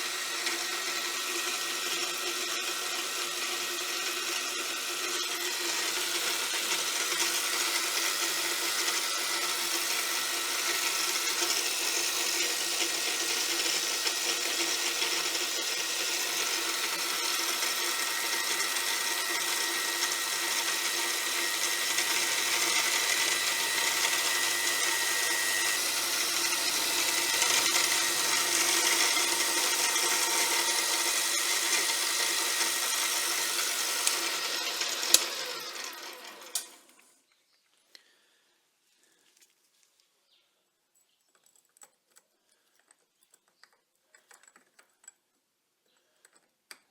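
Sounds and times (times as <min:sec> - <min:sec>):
machine tool cutting metal: 0:00.0 - 0:36.9.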